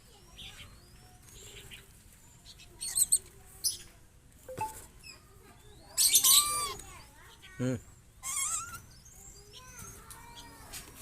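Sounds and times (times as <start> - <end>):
faint background chirping: 0.0 - 11.0
small birds chirping: 0.0 - 11.0.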